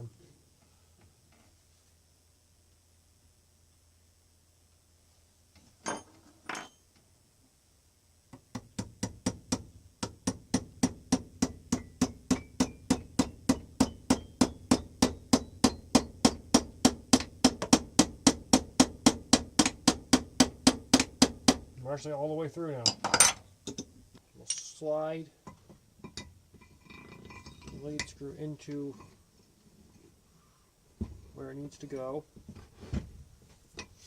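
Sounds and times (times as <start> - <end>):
hammer striking metal pin: 8.5 - 21.6.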